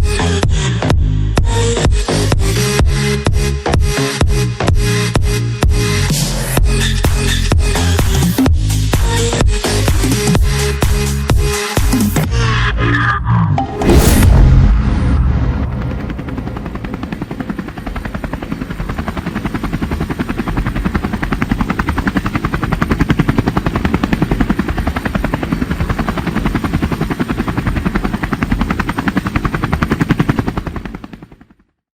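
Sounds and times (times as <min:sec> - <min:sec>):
helicopter rotor blades chopping: 0:13.8 - 0:31.5.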